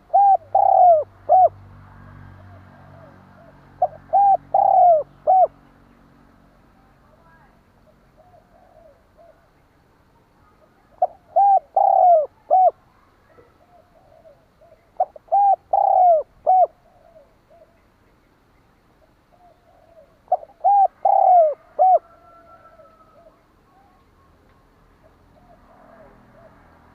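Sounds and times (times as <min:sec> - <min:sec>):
dove cooing: 0:00.0 - 0:01.6, 0:02.4 - 0:05.6, 0:08.2 - 0:09.5, 0:10.4 - 0:17.8, 0:19.3 - 0:24.0, 0:25.0 - 0:26.7.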